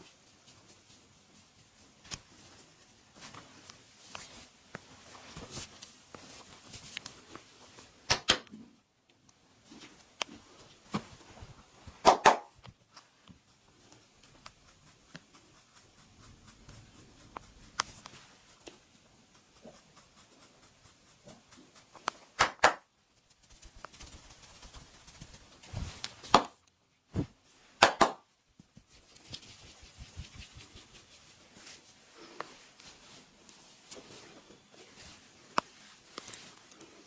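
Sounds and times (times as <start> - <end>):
sharp snaps: 8.1 - 8.6, 12.0 - 12.6, 22.0 - 22.9, 27.8 - 28.3
rubbing and small taps: 23.1 - 26.8, 28.6 - 34.2.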